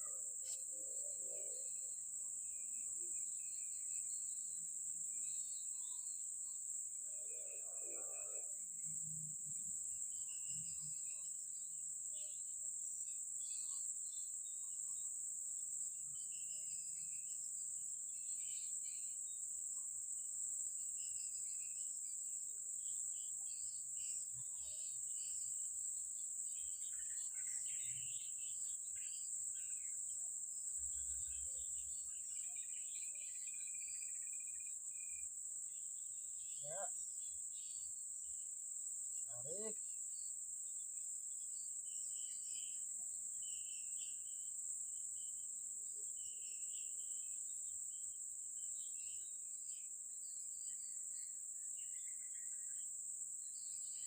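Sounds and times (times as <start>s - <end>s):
insects trilling drone: 0.0s - 54.0s
short insect chirps: 22.8s - 54.0s.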